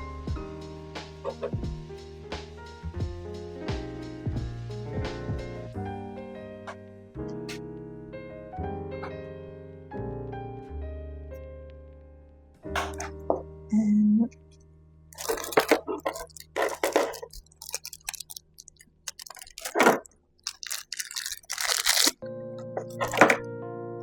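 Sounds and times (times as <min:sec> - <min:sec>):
soft piano music: 0:00.0 - 0:18.2, 0:20.6 - 0:24.0
packaging crinkling: 0:15.1 - 0:22.2, 0:22.8 - 0:23.4.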